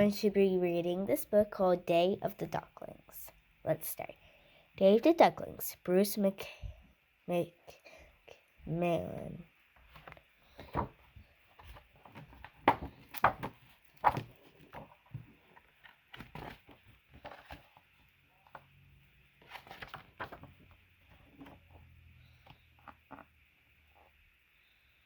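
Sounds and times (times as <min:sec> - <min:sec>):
faint steady hiss: 0:00.0 - 0:25.0
book pages turning: 0:09.8 - 0:18.7, 0:19.4 - 0:23.4.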